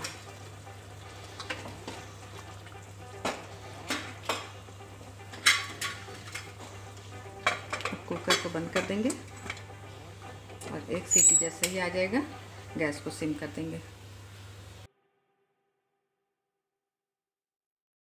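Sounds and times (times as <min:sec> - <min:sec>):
metal spoon scraping a pot: 0:11.0 - 0:11.9.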